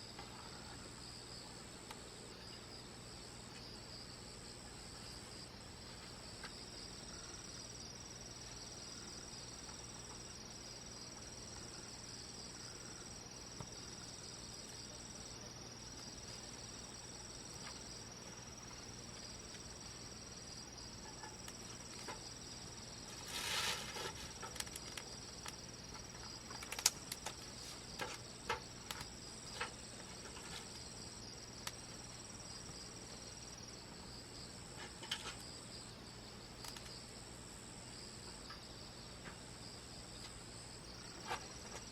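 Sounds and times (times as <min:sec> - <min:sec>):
insects chirring: 0:00.0 - 0:41.9
bonfire crackling and popping: 0:23.3 - 0:28.2.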